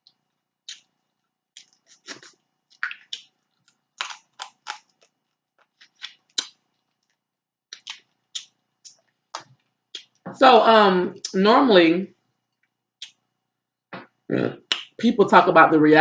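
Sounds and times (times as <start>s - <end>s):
person chewing and smacking: 0.0s - 10.4s, 12.5s - 13.3s, 14.6s - 15.0s.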